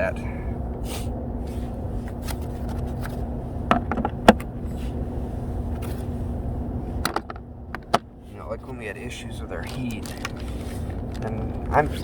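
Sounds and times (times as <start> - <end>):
sharp clicks and knocks: 3.7 - 4.5, 7.0 - 8.1.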